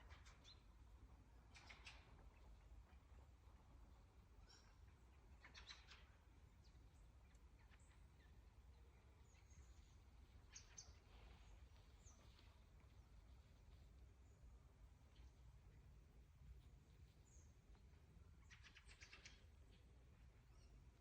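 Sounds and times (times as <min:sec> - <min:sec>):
low steady hum: 0:00.0 - 0:21.0
bird chirps: 0:04.4 - 0:08.4, 0:17.2 - 0:19.8.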